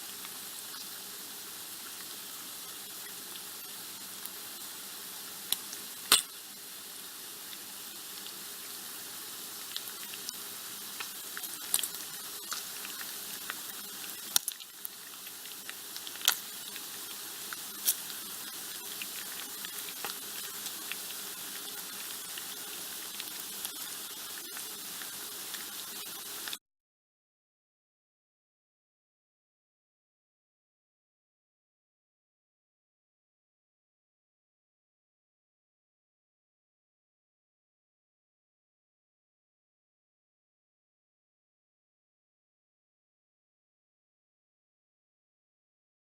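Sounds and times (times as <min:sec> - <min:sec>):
bacon sizzling in a pan: 0:00.0 - 0:26.6.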